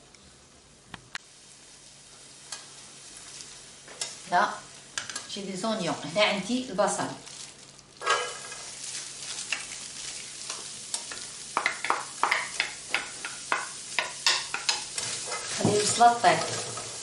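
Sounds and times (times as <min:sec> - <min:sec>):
onions sizzling in a pan: 0:01.2 - 0:17.0
utensil stirring and scraping: 0:08.0 - 0:17.0.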